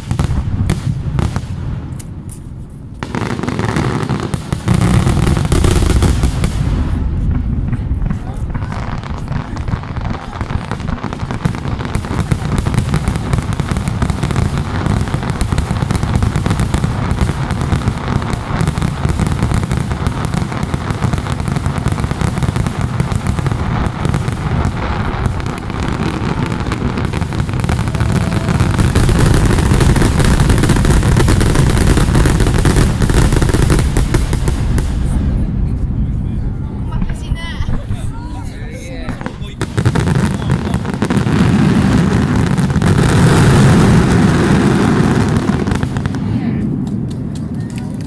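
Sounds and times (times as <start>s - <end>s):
firework shell bursts and crackle: 0.0s - 35.2s, 39.0s - 48.0s
deep rolling rumble: 4.8s - 47.5s.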